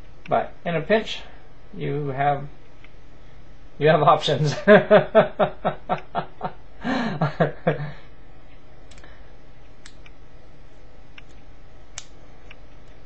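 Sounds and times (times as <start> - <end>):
low background hum: 0.0 - 13.0
man chuckling: 4.5 - 8.1
faint clicks of multitool: 8.9 - 9.1.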